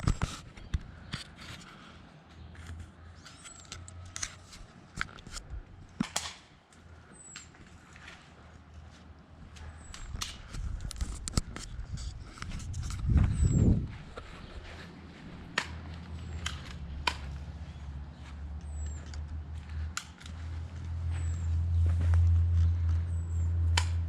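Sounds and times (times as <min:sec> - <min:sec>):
wind rumble on microphone: 0:09.9 - 0:17.4.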